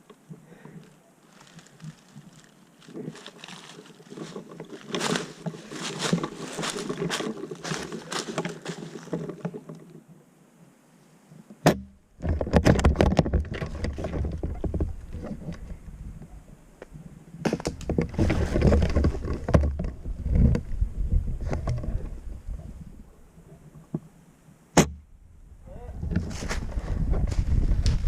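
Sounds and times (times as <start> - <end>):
rustling and crackling movement: 0.0 - 10.2, 12.2 - 24.1, 25.8 - 28.0
loud low rumbling with crackles: 17.8 - 23.2.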